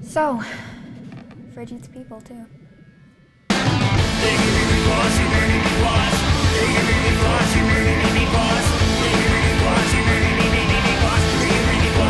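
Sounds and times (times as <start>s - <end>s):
punk rock music: 3.5s - 12.0s.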